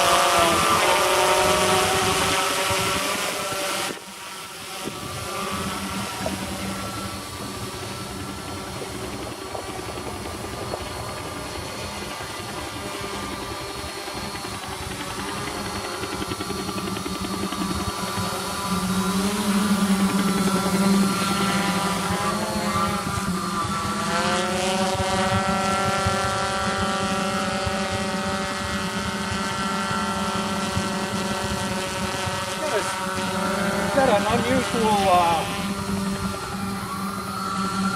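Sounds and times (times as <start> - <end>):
quadcopter drone: 0.0 - 37.9.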